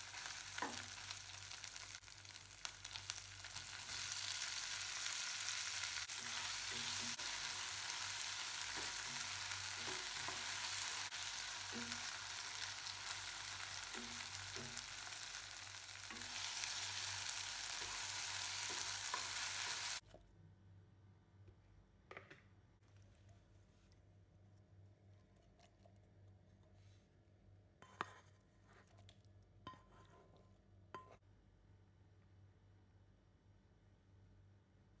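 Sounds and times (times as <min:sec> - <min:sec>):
food sizzling in a pan: 0:00.0 - 0:20.0
scraping strokes in a pan: 0:03.5 - 0:20.0, 0:27.8 - 0:29.0.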